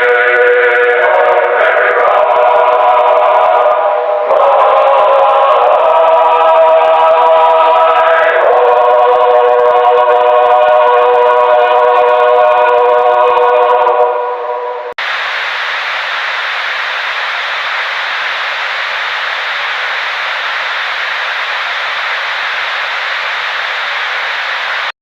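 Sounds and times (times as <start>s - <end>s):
hissing static: 15.0s - 25.0s.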